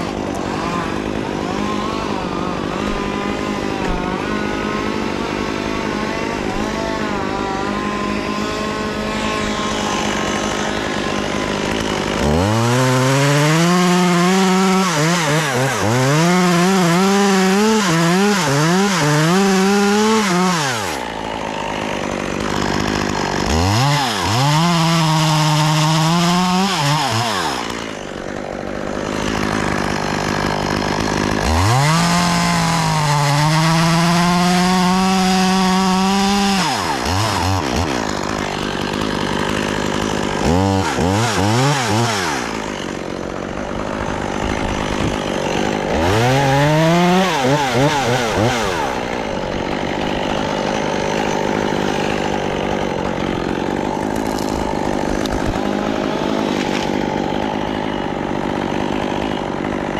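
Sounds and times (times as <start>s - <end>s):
chainsaw revving and cutting wood: 0.0s - 59.9s.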